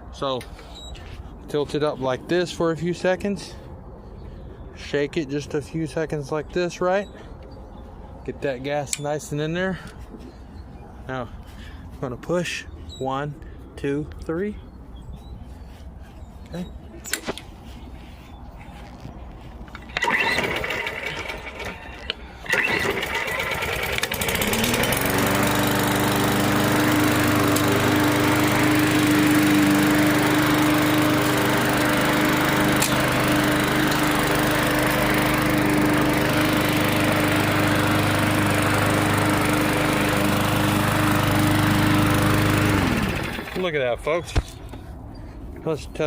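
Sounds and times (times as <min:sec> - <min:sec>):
lawnmower engine starting: 0:19.7 - 0:43.9.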